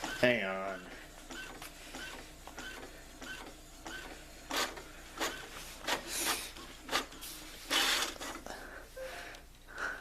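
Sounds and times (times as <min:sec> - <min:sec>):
inkjet printer printing: 0:00.0 - 0:08.5.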